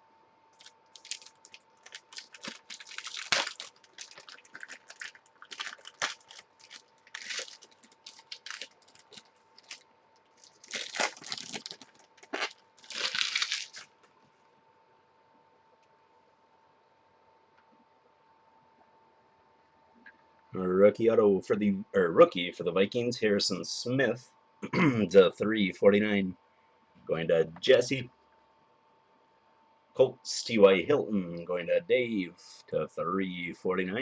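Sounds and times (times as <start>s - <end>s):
faint steady hum: 0.0s - 34.0s
plastic packaging crinkling: 0.6s - 14.1s.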